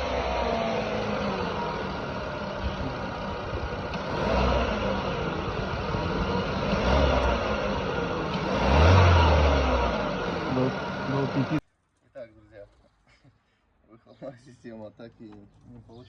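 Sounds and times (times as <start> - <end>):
car engine revving: 0.0 - 11.6.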